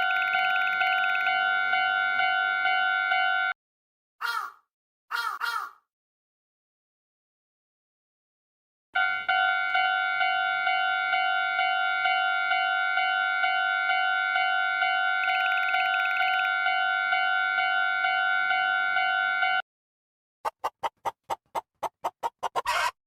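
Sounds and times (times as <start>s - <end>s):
railroad crossing warning bell: 0.0s - 3.6s, 9.0s - 19.6s.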